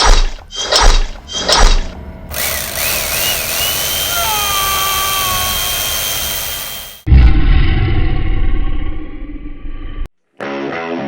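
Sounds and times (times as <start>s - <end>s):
power saw whining and grinding: 1.8s - 7.1s.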